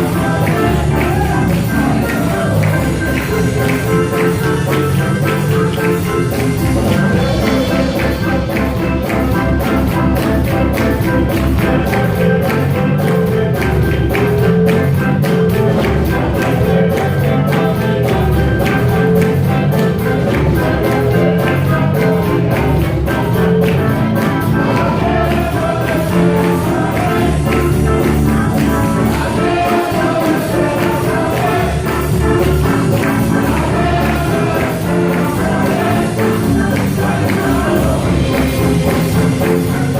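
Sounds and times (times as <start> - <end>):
person singing: 0.0 - 6.2, 24.4 - 39.9
upbeat band music: 0.0 - 39.9.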